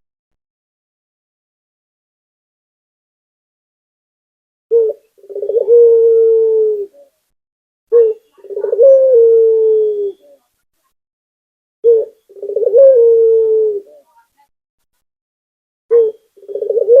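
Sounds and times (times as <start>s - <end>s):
dove cooing: 4.7s - 7.1s, 7.9s - 10.4s, 11.8s - 14.1s, 15.9s - 17.0s.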